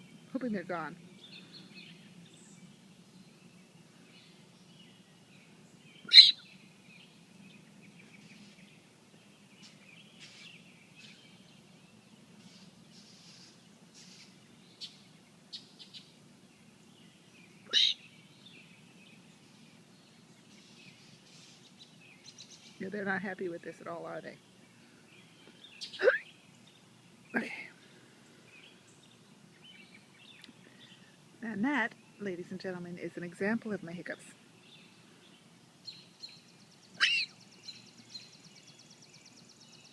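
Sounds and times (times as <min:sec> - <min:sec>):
faint bird chirps: 0:00.0 - 0:22.9, 0:34.6 - 0:39.9
man hiccuping: 0:26.0 - 0:26.3.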